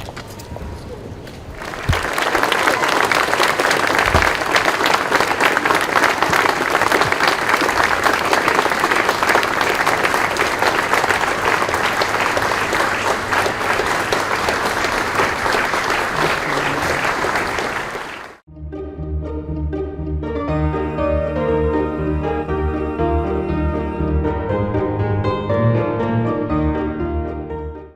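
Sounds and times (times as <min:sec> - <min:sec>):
audience applause: 0:01.5 - 0:18.4.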